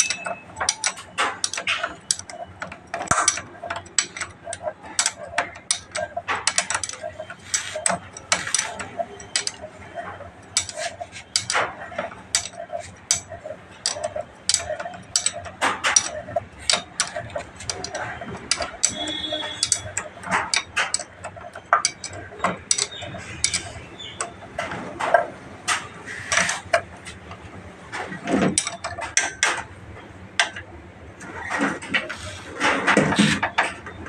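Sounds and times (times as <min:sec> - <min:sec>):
ratchet wrench clicking: 0:00.0 - 0:09.6, 0:12.3 - 0:24.3.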